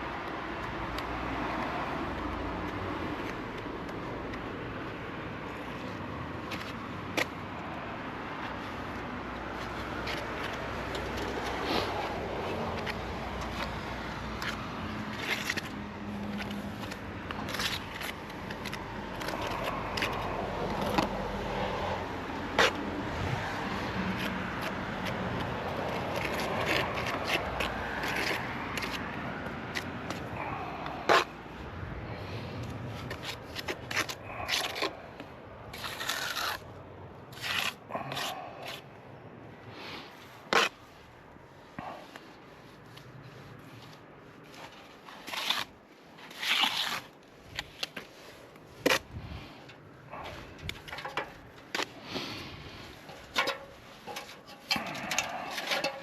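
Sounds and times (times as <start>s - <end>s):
plastering tools scraping: 32.9s - 36.6s, 37.3s - 38.9s, 41.7s - 56.0s.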